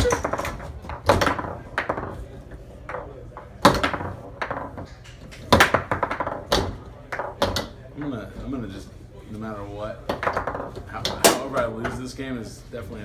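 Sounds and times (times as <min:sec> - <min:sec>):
foosball ball knocking against table: 0:10.1 - 0:11.7.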